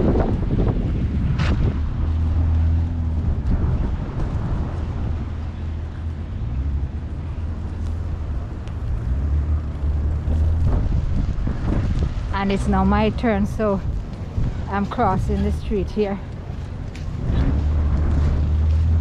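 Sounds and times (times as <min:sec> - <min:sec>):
traffic on slushy street: 0:00.0 - 0:19.0
wind buffeting microphone: 0:00.0 - 0:19.0
sharp crack: 0:01.2 - 0:02.7.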